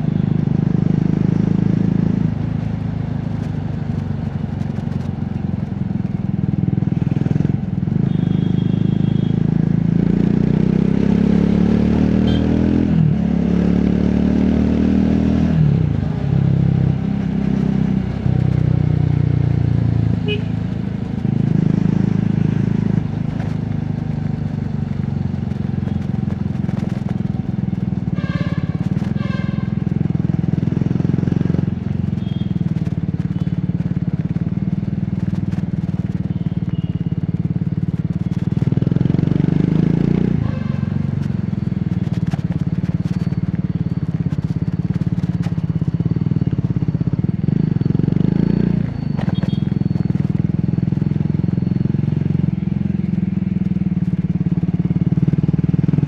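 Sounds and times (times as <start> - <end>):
motorcycle engine shifting gears: 0.0 - 56.0
horn beeping: 12.2 - 12.6, 28.1 - 29.8, 40.4 - 41.2, 49.1 - 49.9.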